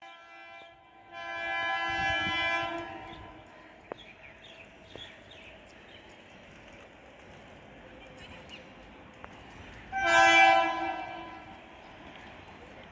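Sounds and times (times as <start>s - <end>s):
train horn blast: 0.0s - 3.6s, 9.9s - 11.7s.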